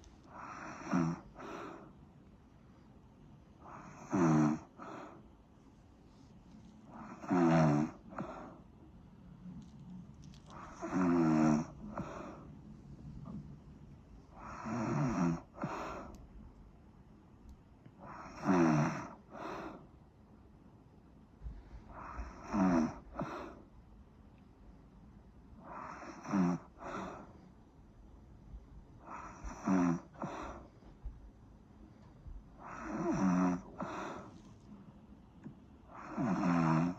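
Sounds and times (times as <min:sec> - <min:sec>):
buzzing snore: 0:00.4 - 0:01.8, 0:03.7 - 0:05.2, 0:06.9 - 0:08.6, 0:10.6 - 0:12.5, 0:14.4 - 0:16.1, 0:18.0 - 0:19.8, 0:21.9 - 0:23.6, 0:25.6 - 0:27.3, 0:29.0 - 0:30.6, 0:32.6 - 0:34.3, 0:35.9 - 0:36.9.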